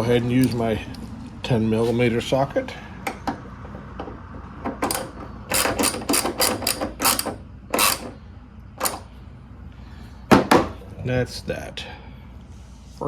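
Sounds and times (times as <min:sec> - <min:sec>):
ratchet wrench clicking: 0:04.8 - 0:08.2, 0:08.8 - 0:09.1.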